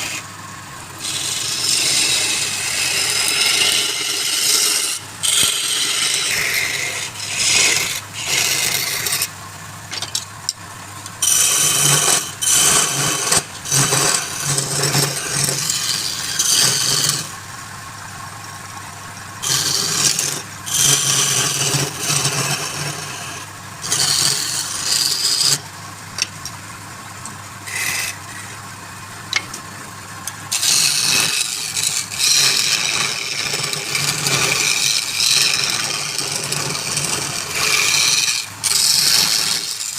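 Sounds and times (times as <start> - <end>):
turning tool scraping wood: 0.0 - 0.4, 1.0 - 9.4, 11.2 - 17.4, 19.4 - 25.7, 27.6 - 28.6, 30.3 - 39.9
wood lathe humming: 0.0 - 9.4, 11.2 - 17.4, 19.4 - 25.7, 27.6 - 28.7, 29.9 - 39.9.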